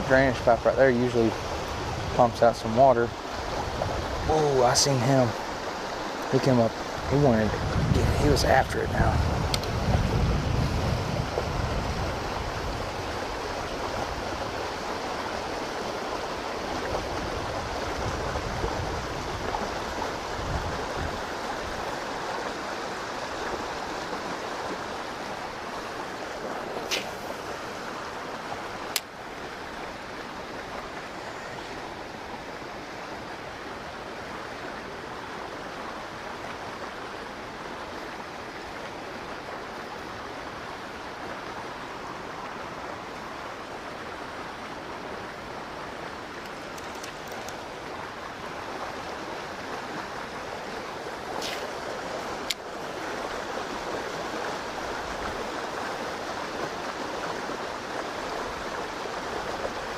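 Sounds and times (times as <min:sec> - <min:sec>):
stream water rushing: 0:00.0 - 0:59.9
sharp clicks: 0:46.4 - 0:47.6.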